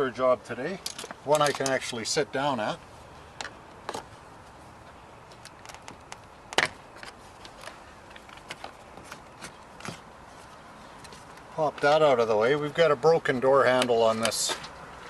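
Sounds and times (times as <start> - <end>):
tools clicking and tapping: 0.8 - 1.8.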